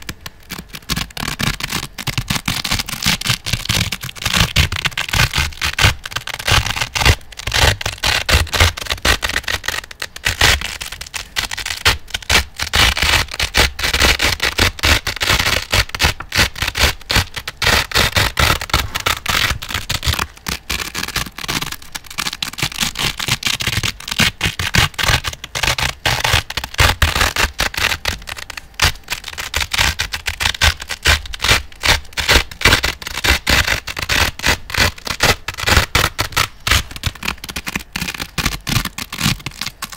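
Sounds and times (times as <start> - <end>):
velcro strips ripping apart: 0.0 - 39.9.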